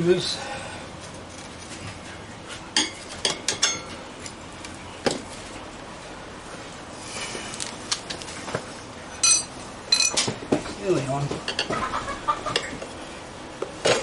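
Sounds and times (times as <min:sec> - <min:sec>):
tyre levers clinking on rim: 0:09.2 - 0:10.3.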